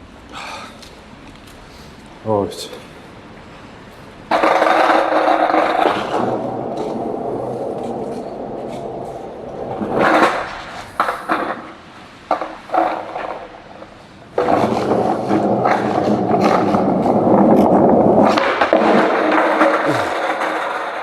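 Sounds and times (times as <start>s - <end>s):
skateboard rolling on wet pavement: 4.2s - 21.0s
skateboard clacks: 4.3s - 21.0s.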